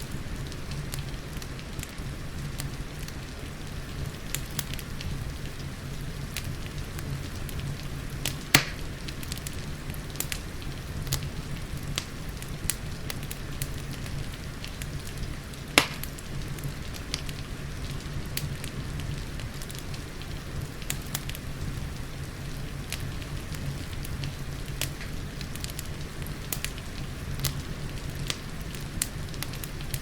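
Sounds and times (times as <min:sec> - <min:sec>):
fire popping: 0:00.0 - 0:30.0
rain hiss: 0:00.0 - 0:30.0
wood fire crackling: 0:00.0 - 0:30.0.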